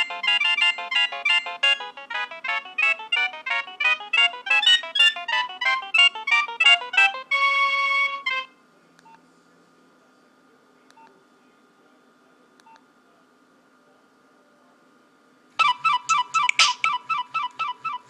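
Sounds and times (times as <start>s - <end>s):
phone ringtone note: 0.0s - 8.5s.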